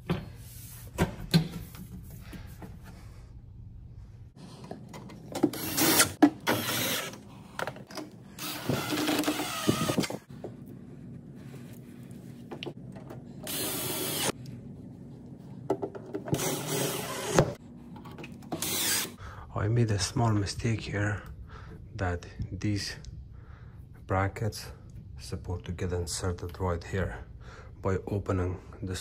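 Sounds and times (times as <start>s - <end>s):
low steady hum: 10.2s - 13.5s.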